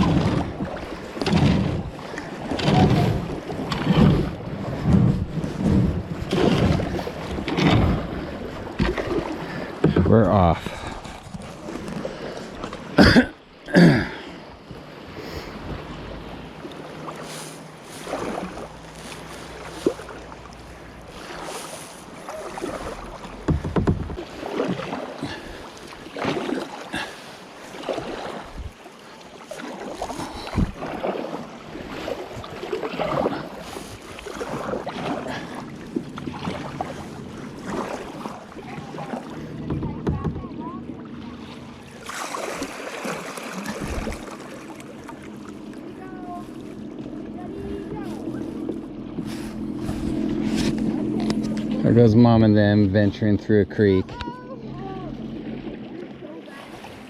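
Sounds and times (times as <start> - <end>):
paddle splashing in water: 0.0 - 57.0
loud knocks: 23.4 - 24.2.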